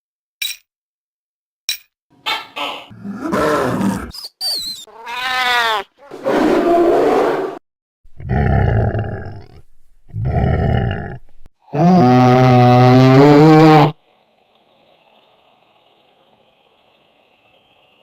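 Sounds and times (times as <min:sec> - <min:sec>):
cartoon monster groan: 0:02.9 - 0:04.1, 0:08.2 - 0:14.0
cartoon monster roars: 0:02.9 - 0:04.1, 0:08.2 - 0:14.0
high falling whistle: 0:04.2 - 0:04.9.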